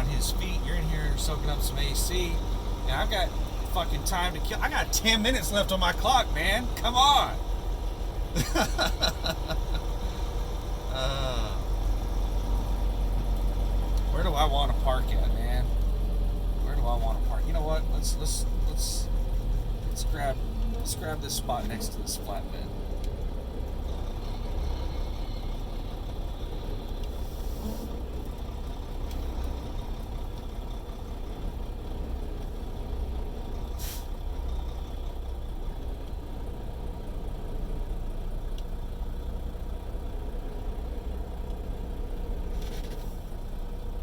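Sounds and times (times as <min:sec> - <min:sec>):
diesel truck engine rumbling: 0:00.0 - 0:44.0
air brake hisses: 0:27.2 - 0:28.0, 0:33.8 - 0:34.1.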